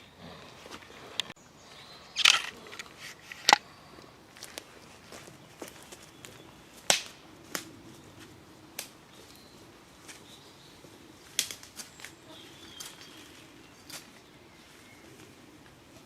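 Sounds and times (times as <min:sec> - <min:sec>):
dry twigs snapping: 0:06.8 - 0:07.7, 0:08.8 - 0:09.0, 0:11.3 - 0:12.1
faint bird chirps: 0:09.1 - 0:15.6.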